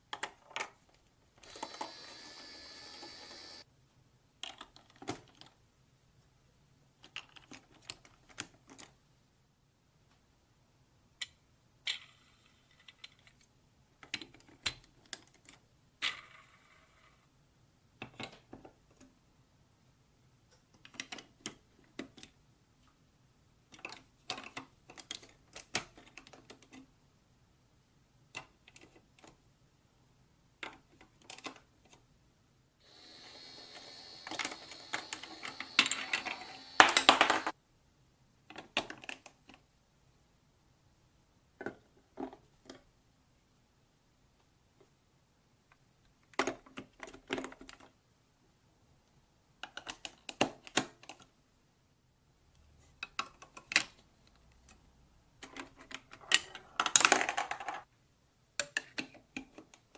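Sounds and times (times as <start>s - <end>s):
marbles rolling: 34.2s - 37.5s, 56.6s - 57.8s
marbles clattering on plastic run: 34.3s - 37.5s, 56.8s - 57.8s.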